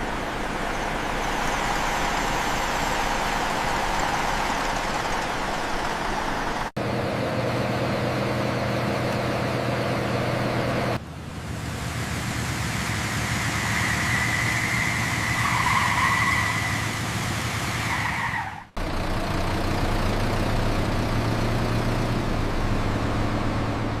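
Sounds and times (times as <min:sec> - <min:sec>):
bus engine idling: 0:00.0 - 0:17.9.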